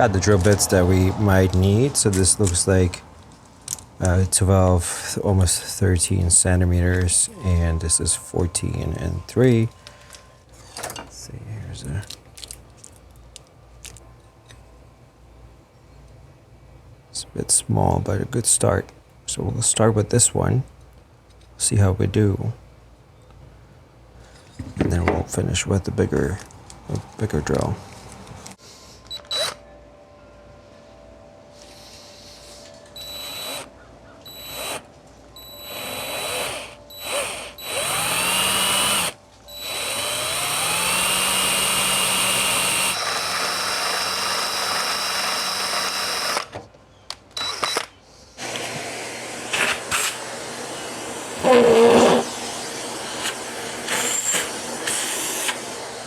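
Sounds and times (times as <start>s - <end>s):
power drill whining: 33.0s - 33.7s, 34.3s - 34.8s, 35.4s - 46.5s, 47.4s - 56.0s.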